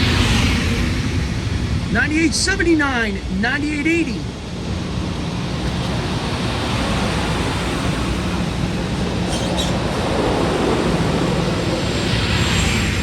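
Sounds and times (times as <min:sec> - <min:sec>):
electric train rolling past: 0:00.0 - 0:13.0
high-pitched squeal: 0:05.6 - 0:13.0.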